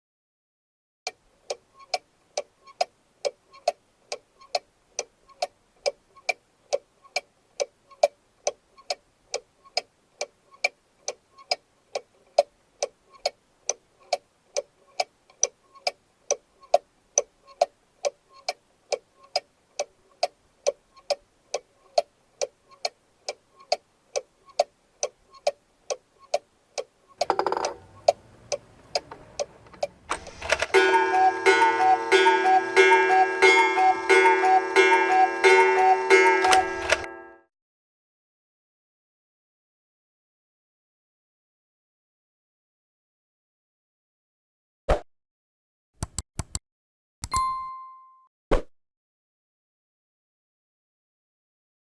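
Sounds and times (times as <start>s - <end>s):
clock ticking: 47.2s - 47.4s.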